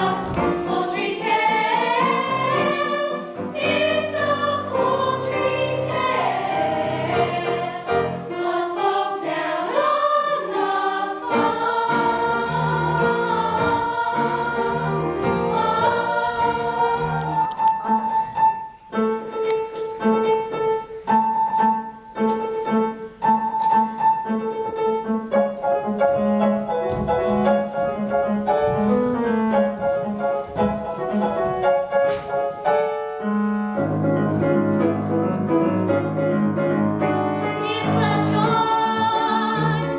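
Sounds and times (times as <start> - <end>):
choir singing: 0.0 - 18.1, 37.4 - 39.9
piano accompaniment: 0.0 - 39.9.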